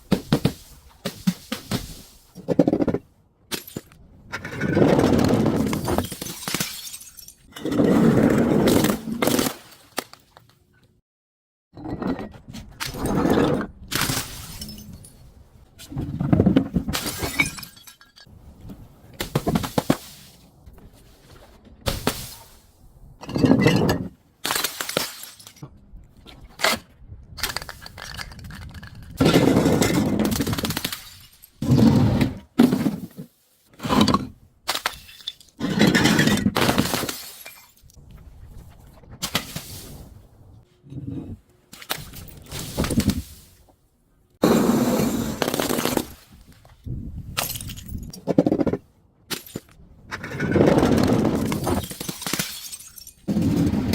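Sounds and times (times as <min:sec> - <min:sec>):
glass bottles breaking and crushing: 0:05.5 - 0:07.7, 0:12.9 - 0:15.2, 0:16.9 - 0:18.3, 0:23.2 - 0:25.6, 0:29.2 - 0:31.7, 0:34.0 - 0:38.0, 0:47.4 - 0:48.6, 0:49.3 - 0:49.7, 0:51.3 - 0:53.6.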